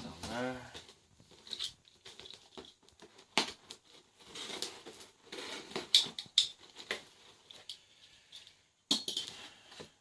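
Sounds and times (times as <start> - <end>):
packaging crinkling and rustling: 0.0 - 7.8.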